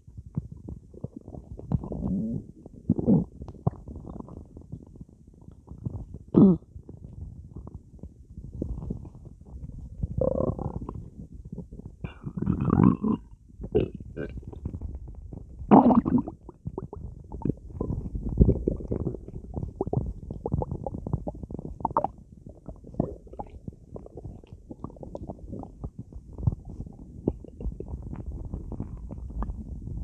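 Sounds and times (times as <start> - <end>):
stomach gurgling and rumbling: 0.0 - 30.0
bubbly pops: 15.7 - 30.0.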